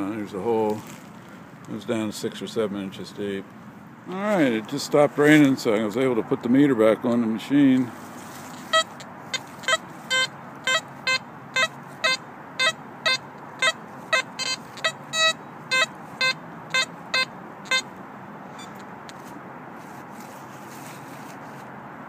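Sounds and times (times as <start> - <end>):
metal detector short beeps: 8.7 - 9.0, 9.6 - 17.9, 18.6 - 19.2.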